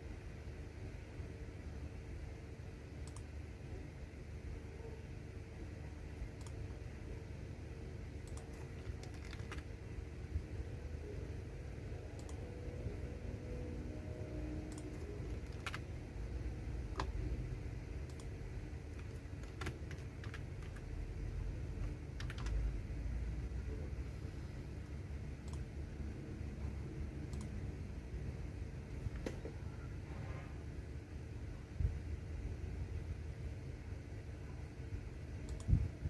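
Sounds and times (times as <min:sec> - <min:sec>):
low background rumble: 0:00.0 - 0:36.0
keyboard key clicks: 0:08.2 - 0:09.7.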